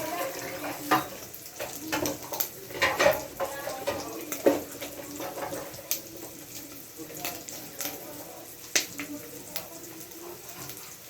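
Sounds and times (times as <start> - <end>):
kitchenware knocking and clinking: 0.0 - 5.8.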